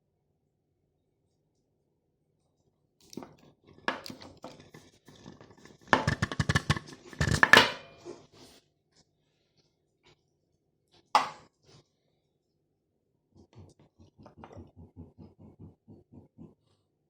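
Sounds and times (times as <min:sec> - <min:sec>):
plastic grinder clicking and crunching: 0:03.9 - 0:07.6.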